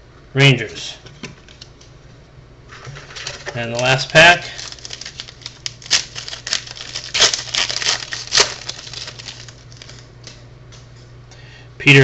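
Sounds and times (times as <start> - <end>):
steady low hum: 0.0 - 12.0
foil wrapper tearing and crinkling: 3.0 - 10.3.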